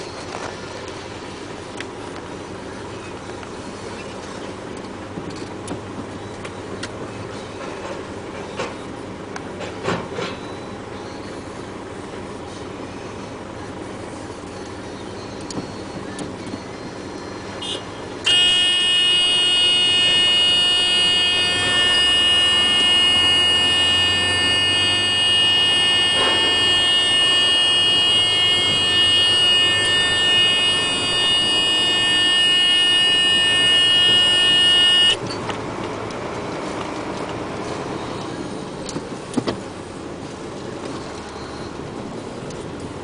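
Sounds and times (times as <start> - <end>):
diesel truck engine running: 0.0 - 43.0
electronic warning buzzer: 17.6 - 35.2
clunk: 26.2 - 26.6.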